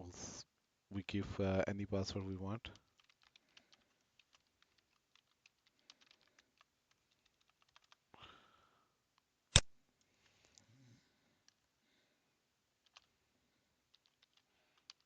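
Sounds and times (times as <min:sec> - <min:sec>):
keyboard typing: 0:02.7 - 0:08.0, 0:12.8 - 0:13.1, 0:13.9 - 0:15.0
sharp loud click: 0:09.5 - 0:09.7.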